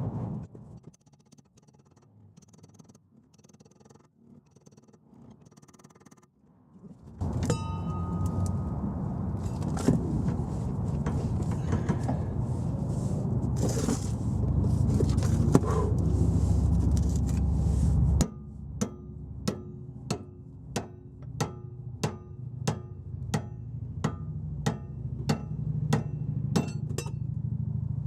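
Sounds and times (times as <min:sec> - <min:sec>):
steady background noise: 0:03.7 - 0:28.0
hammer striking metal fork: 0:07.4 - 0:08.6, 0:18.2 - 0:27.2.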